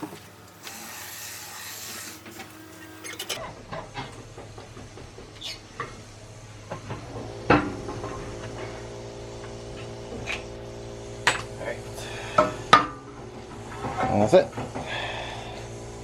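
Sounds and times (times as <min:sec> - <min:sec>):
steady hum: 0:00.0 - 0:03.4.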